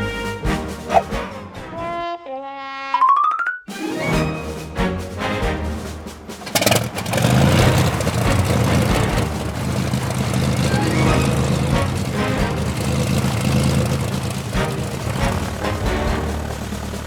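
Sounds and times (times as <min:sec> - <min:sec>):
cartoon engine droning: 0:06.5 - 0:17.0
cartoon engine noisy burst: 0:06.5 - 0:17.0.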